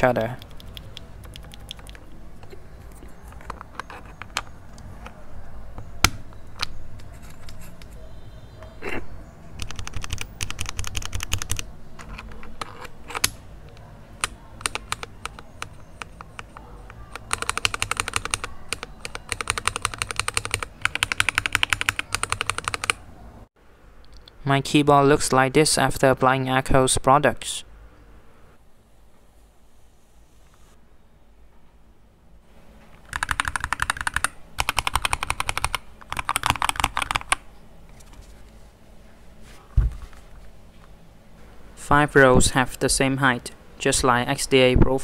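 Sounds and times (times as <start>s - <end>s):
mechanical keyboard typing: 0.0s - 4.9s, 9.6s - 23.0s, 33.0s - 37.4s.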